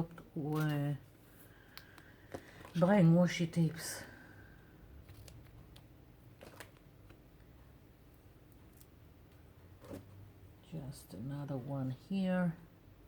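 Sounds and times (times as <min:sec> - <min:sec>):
tape and paper clicks and rustles: 0:05.0 - 0:07.2.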